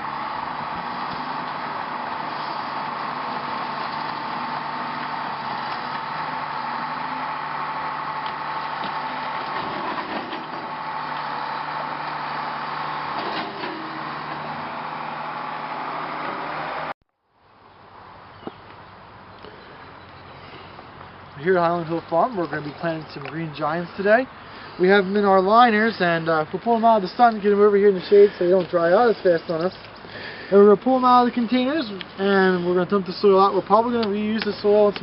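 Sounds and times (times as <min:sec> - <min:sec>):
vehicle engine droning: 0:00.0 - 0:17.0.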